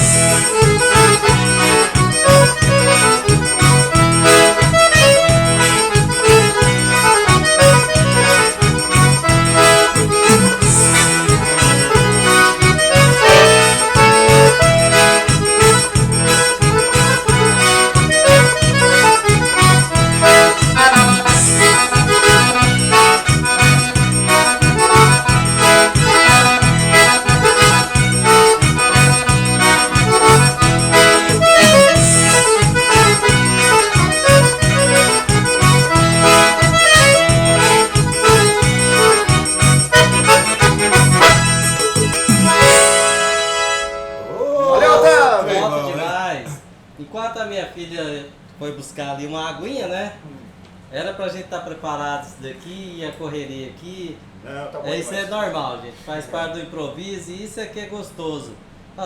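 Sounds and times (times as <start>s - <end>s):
steady beat: 0.0s - 42.9s
accordion melody: 0.0s - 46.1s.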